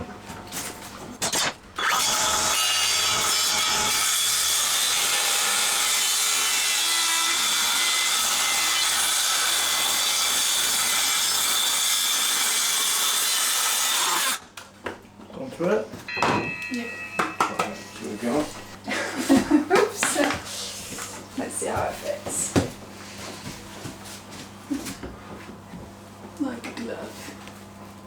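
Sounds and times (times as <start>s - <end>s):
power saw cutting timber: 1.2s - 14.4s.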